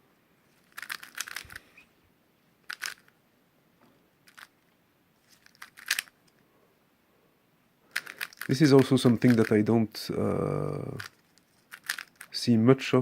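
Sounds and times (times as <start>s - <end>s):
puzzle cube layers clicking: 0.6s - 1.7s, 2.7s - 3.1s, 4.3s - 4.5s, 5.3s - 6.2s, 7.9s - 9.8s, 10.7s - 12.4s.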